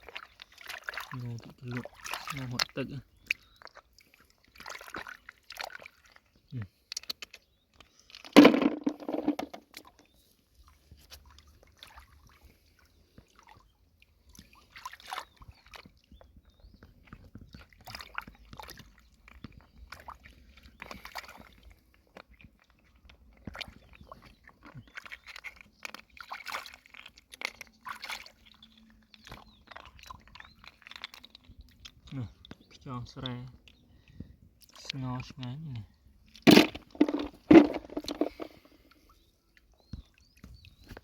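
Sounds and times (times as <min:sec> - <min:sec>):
shells crunching and clicking: 0:08.2 - 0:09.6, 0:36.4 - 0:38.7.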